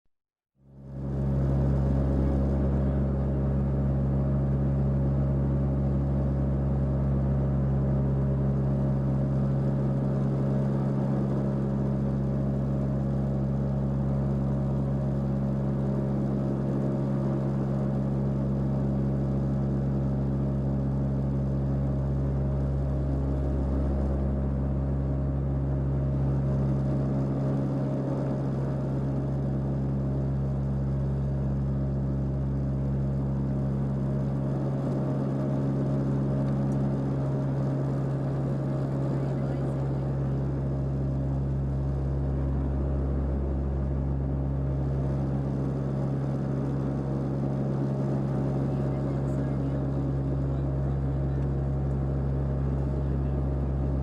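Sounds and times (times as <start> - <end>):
airplane engine drone: 0.6 - 54.0.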